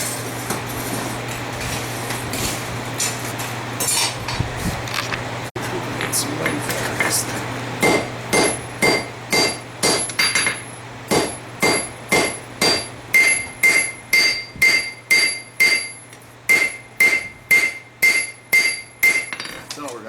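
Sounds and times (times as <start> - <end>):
hammer striking steel on anvil: 7.8 - 19.6.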